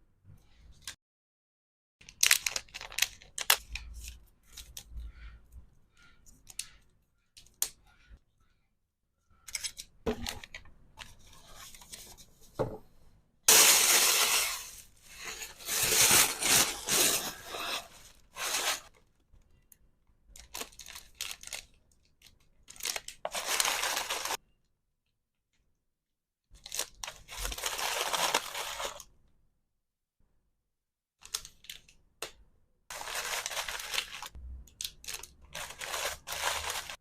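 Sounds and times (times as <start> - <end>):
packaging tearing and crinkling: 2.0 - 3.7, 15.5 - 18.9, 22.7 - 24.4, 26.6 - 29.0, 32.9 - 37.0.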